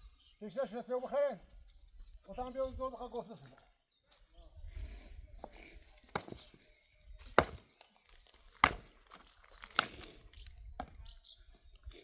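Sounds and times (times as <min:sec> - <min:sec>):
sharp chopping strikes: 0:06.1 - 0:06.5, 0:07.4 - 0:07.7, 0:08.6 - 0:09.0.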